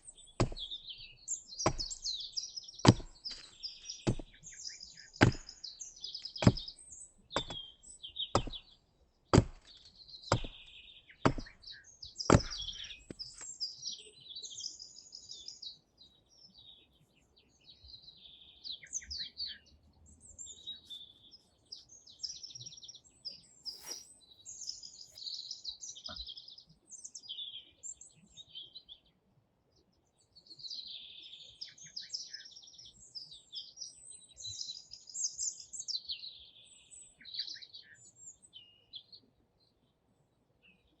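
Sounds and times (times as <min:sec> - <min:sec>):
songbirds chirping and singing: 0:00.0 - 0:41.0
sharp chopping knocks: 0:00.4 - 0:00.8, 0:01.7 - 0:02.1, 0:02.9 - 0:04.4, 0:05.2 - 0:05.6, 0:06.4 - 0:06.7, 0:07.4 - 0:07.7, 0:08.4 - 0:08.6, 0:09.4 - 0:11.6, 0:12.3 - 0:13.2.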